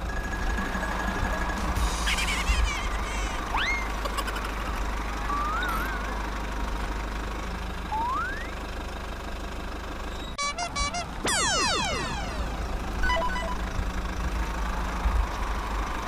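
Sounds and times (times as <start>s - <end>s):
low engine rumble: 0.0s - 16.0s
whistle-like glides: 10.4s - 13.7s.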